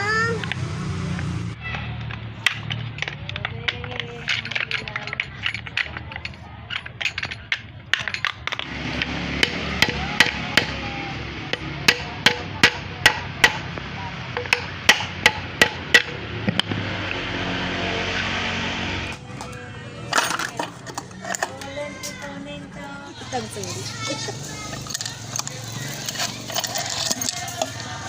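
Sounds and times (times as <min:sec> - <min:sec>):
hammer striking: 0:08.0 - 0:17.2.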